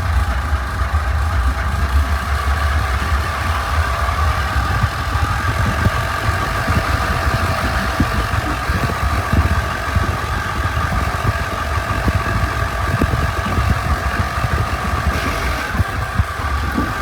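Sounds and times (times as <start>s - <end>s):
lawnmower engine running: 0.0s - 17.0s.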